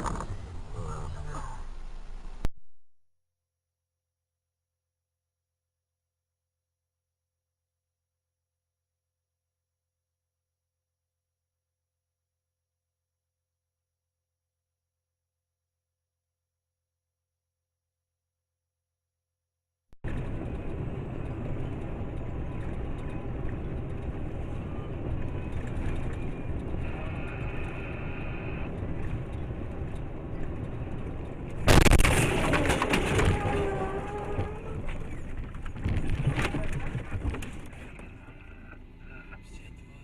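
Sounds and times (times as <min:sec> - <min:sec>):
car road and engine noise: 0:00.0 - 0:02.5, 0:20.0 - 0:40.0
sudden loud bang: 0:31.7 - 0:33.5.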